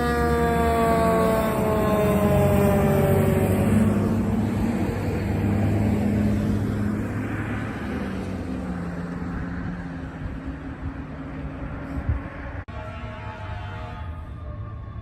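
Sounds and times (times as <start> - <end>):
siren winding down: 0.0 - 4.3
fire truck engine running: 0.0 - 12.6
road noise: 0.0 - 15.0.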